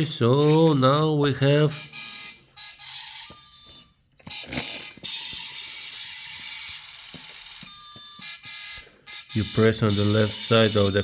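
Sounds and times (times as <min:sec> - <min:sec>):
toy electronic sound effect: 0:01.7 - 0:11.0.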